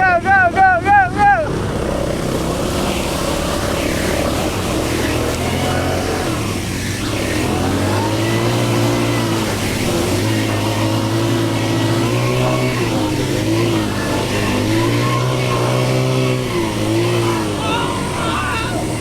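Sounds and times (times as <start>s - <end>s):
atv engine revving: 0.0s - 19.0s.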